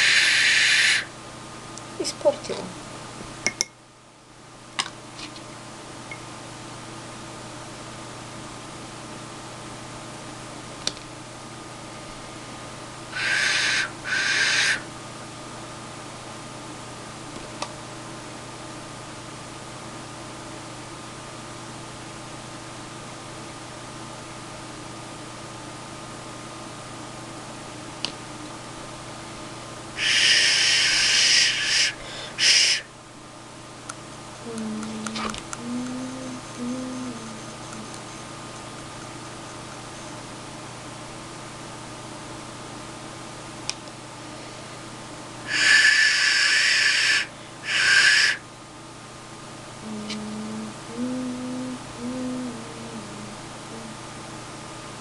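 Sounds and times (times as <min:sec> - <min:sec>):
breathy clay whistle: 0:00.0 - 0:01.1, 0:13.1 - 0:14.9, 0:30.0 - 0:32.9, 0:45.5 - 0:48.4.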